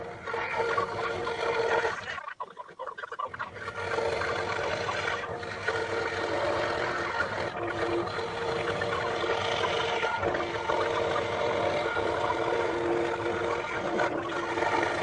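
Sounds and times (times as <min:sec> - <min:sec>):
scroll saw cutting wood: 0:00.0 - 0:02.1, 0:03.5 - 0:15.0.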